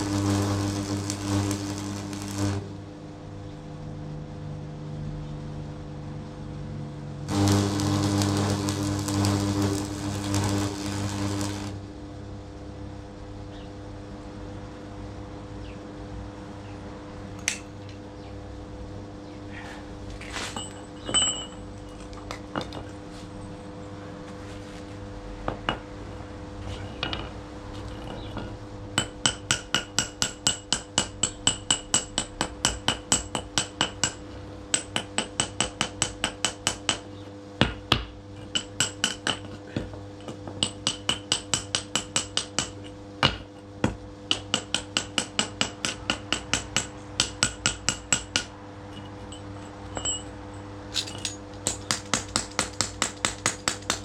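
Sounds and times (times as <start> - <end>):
hammer blows with metallic ring: 44.6 - 53.9.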